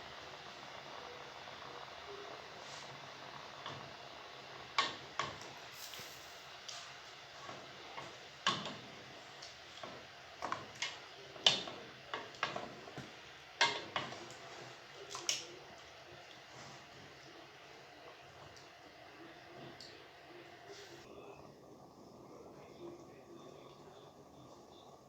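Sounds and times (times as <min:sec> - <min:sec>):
utensils knocking on cookware: 0:09.8 - 0:14.3.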